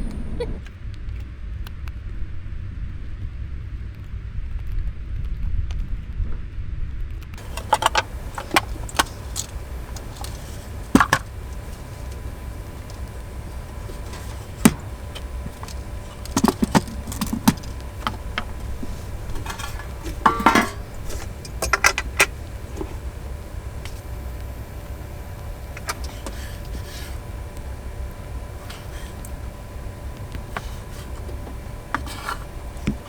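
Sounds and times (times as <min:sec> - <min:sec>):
steady low rumble: 0:00.0 - 0:00.7, 0:07.4 - 0:33.0
small hard objects clicking: 0:07.4 - 0:24.2.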